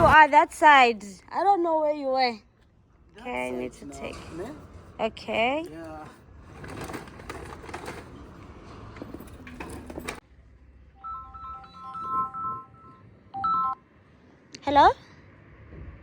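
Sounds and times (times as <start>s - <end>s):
phone ringtone beeping melody: 11.0s - 13.8s.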